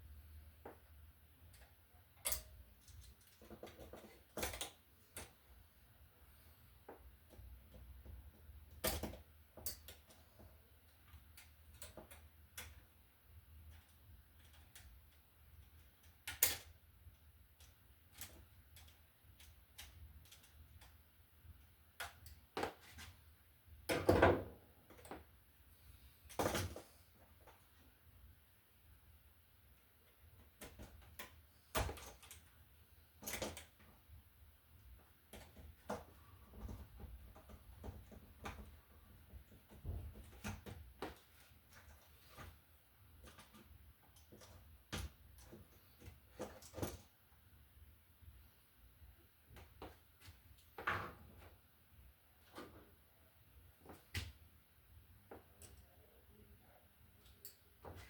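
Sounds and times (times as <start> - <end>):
tools clicking and tapping: 1.4 - 5.4, 6.9 - 13.0.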